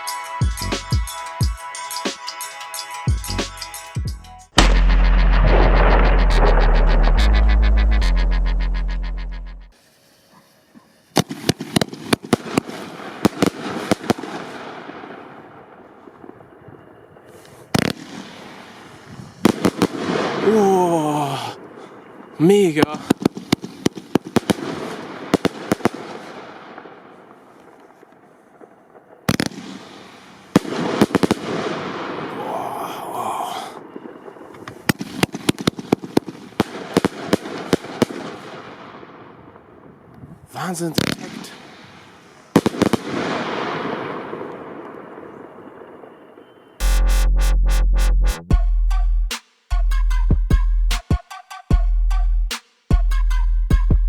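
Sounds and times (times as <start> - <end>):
firework bangs: 4.6 - 8.0, 11.2 - 20.6, 21.6 - 32.4, 33.6 - 46.9
firework crackling hiss: 4.6 - 8.0, 9.7 - 15.4, 23.1 - 38.9.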